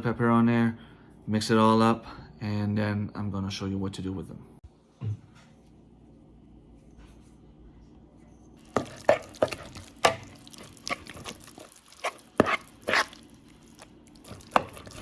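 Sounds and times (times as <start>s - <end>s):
utensil stirring wet batter: 8.6s - 15.0s.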